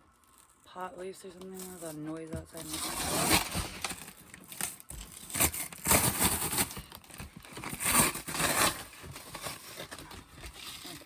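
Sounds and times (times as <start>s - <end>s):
packing tape ripping off cardboard: 2.6s - 11.0s.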